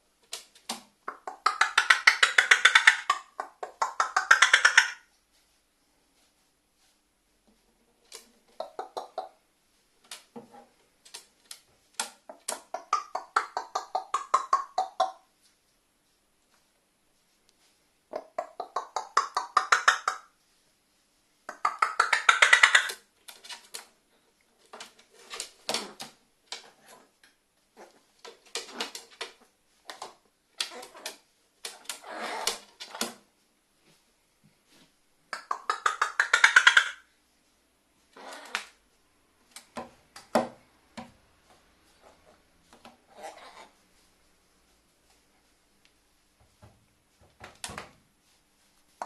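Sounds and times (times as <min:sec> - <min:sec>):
crow rattling calls: 0:01.3 - 0:05.0, 0:21.6 - 0:23.0, 0:35.5 - 0:37.0.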